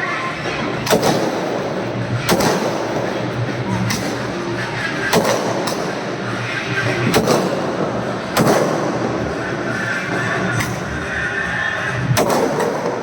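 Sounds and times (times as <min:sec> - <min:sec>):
firework sharp bangs: 0:00.8 - 0:03.2, 0:05.1 - 0:06.0, 0:07.0 - 0:09.4, 0:12.1 - 0:13.0.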